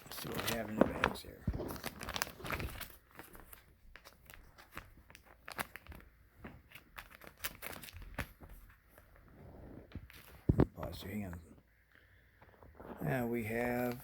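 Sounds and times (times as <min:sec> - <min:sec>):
plastic bags crinkling: 0:00.0 - 0:09.1.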